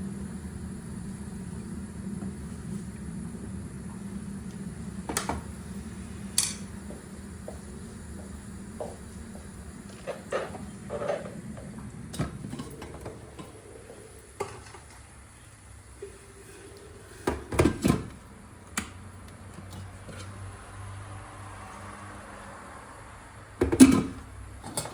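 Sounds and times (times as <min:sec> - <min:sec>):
dishes and utensils clinking: 0:06.4 - 0:06.7.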